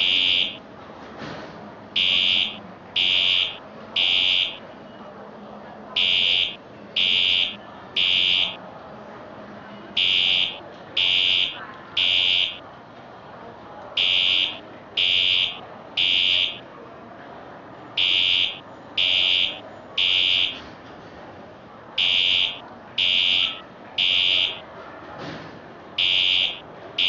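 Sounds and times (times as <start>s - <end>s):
fire alarm high-pitched beeps: 0.0s - 0.6s, 2.0s - 4.6s, 6.0s - 8.6s, 10.0s - 12.6s, 14.0s - 16.6s, 18.0s - 20.6s, 22.0s - 24.6s, 26.0s - 26.6s.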